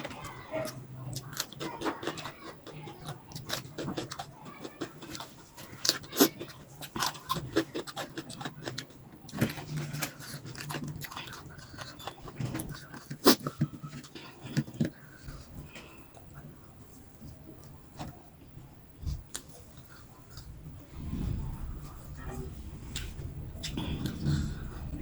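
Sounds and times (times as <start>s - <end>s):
chewing and slurping noodles: 0.0s - 16.0s
faint low hum: 0.0s - 25.0s.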